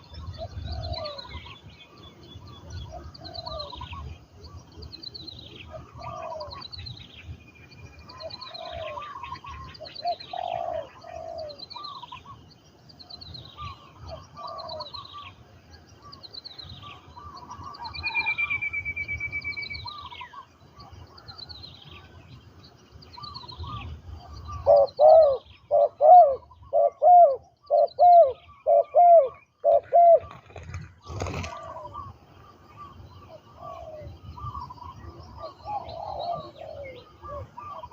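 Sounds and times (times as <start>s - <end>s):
doves cooing: 0.0s - 1.6s, 2.7s - 6.7s, 8.1s - 12.4s, 13.6s - 15.3s, 23.2s - 37.9s.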